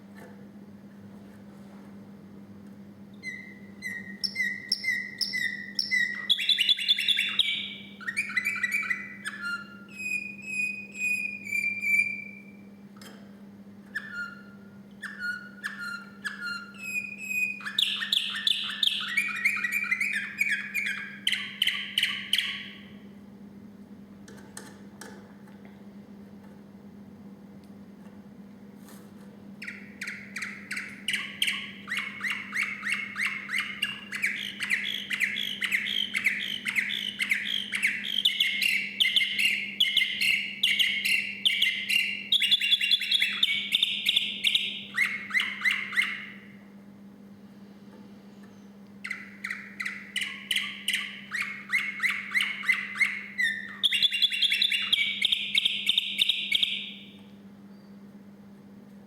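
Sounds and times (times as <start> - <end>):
steady low hum: 0.0 - 59.0
canary singing: 3.1 - 12.8, 13.9 - 23.0, 29.6 - 46.6, 48.4 - 58.1.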